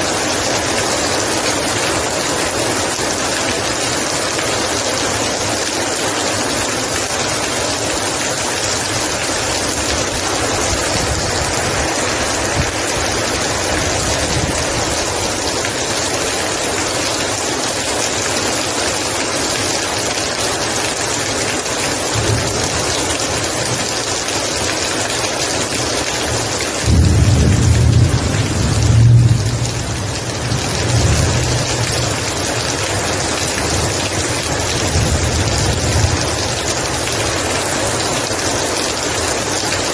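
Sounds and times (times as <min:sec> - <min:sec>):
heavy rain: 0:00.0 - 0:39.9
deep low rumble: 0:27.0 - 0:32.2.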